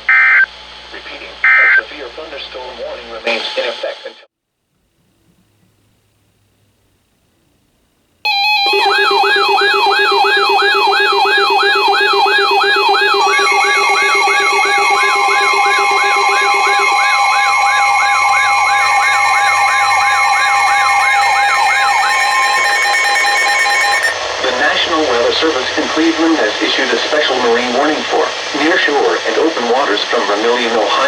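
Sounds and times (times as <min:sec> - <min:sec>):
steady electronic alert tones: 0:08.3 - 0:24.2
siren-like sweep: 0:08.3 - 0:25.6.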